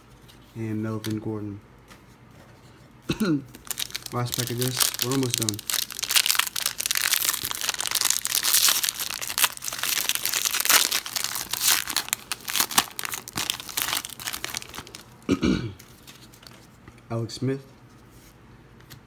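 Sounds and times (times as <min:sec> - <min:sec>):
plastic wrapper crinkling: 0:03.5 - 0:16.6.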